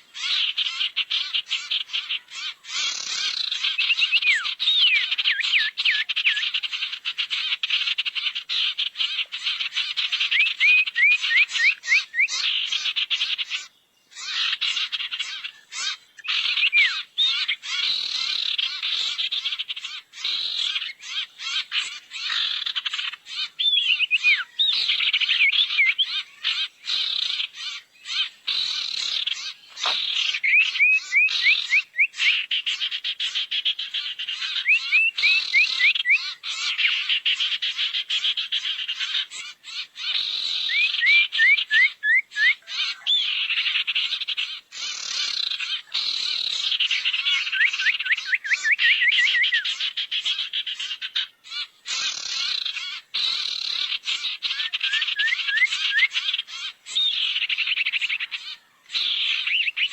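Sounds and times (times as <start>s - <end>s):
harsh chattering bird squawks: 0.2s - 59.9s
sharp whistled bird notes: 28.6s - 32.5s, 34.6s - 36.3s, 40.4s - 42.7s, 47.0s - 49.8s, 54.6s - 56.2s, 59.3s - 59.9s.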